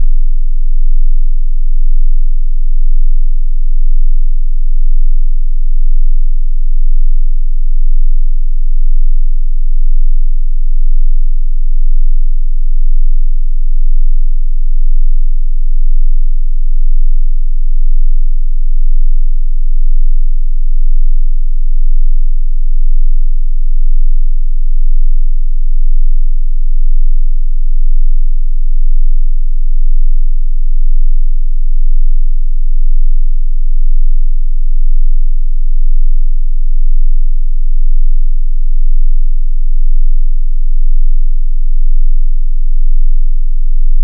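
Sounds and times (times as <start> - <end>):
low pulsing sine-wave tone: 0.0 - 44.0.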